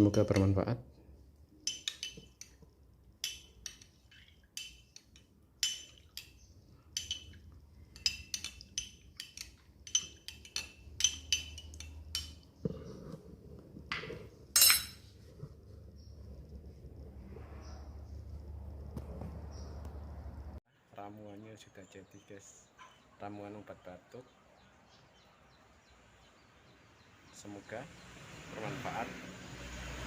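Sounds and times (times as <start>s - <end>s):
spoon clinking against glass: 1.6s - 2.6s, 3.2s - 12.8s, 14.0s - 15.0s.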